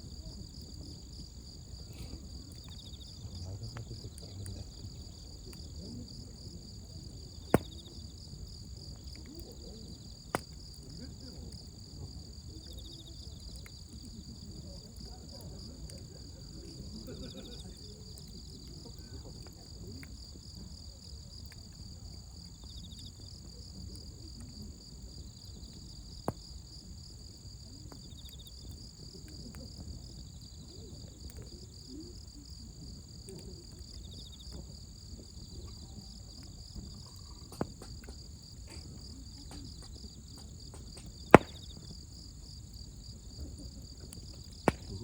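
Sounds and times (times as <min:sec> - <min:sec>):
insects trilling: 0:00.0 - 0:45.0
campfire pops: 0:01.6 - 0:11.8, 0:25.4 - 0:27.0, 0:35.6 - 0:42.2, 0:43.8 - 0:45.0.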